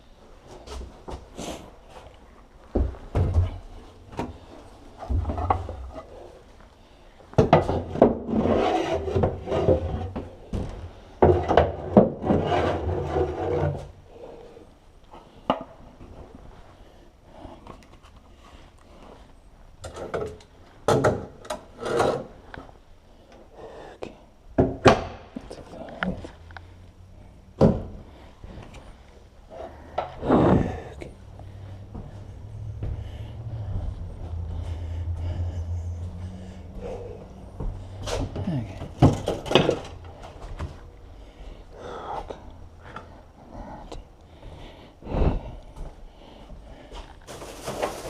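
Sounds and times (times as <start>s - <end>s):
objects rubbing and scraping: 7.7s - 10.4s, 11.6s - 14.0s, 25.7s - 40.8s.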